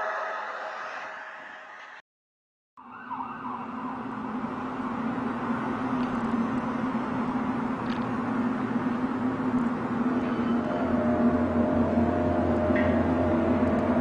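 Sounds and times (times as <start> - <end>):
rushing noise: 0.0 - 2.0, 9.1 - 14.0
low droning hum: 4.3 - 14.0.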